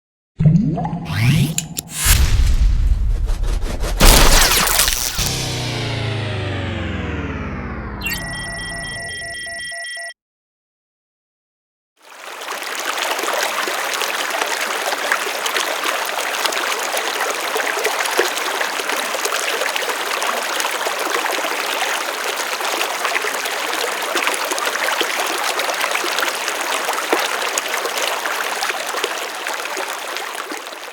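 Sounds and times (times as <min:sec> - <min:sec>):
river water flowing: 0:12.0 - 0:30.9.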